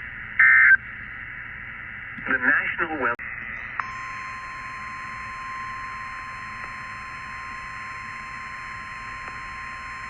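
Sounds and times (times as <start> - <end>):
receiver hiss: 0.0 - 10.0
long high alarm beep: 3.8 - 10.0.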